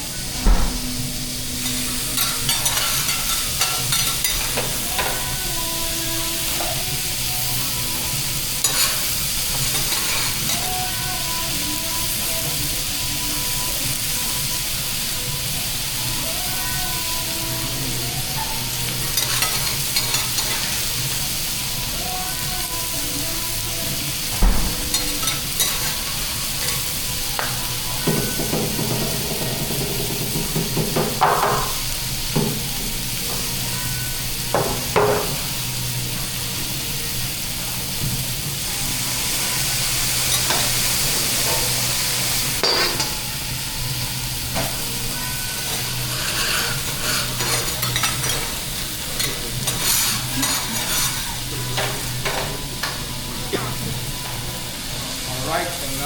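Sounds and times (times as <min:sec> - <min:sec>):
food sizzling on a griddle: 0:01.2 - 0:56.0
metal spatulas scraping and clacking: 0:01.7 - 0:05.1, 0:08.6 - 0:09.1, 0:19.2 - 0:20.8, 0:45.7 - 0:52.0.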